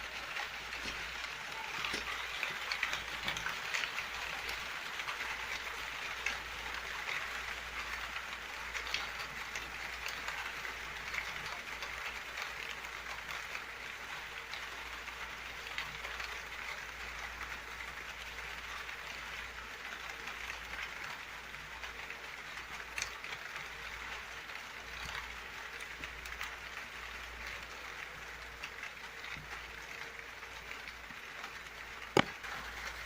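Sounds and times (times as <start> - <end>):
steady rain falling: 0.0 - 33.0.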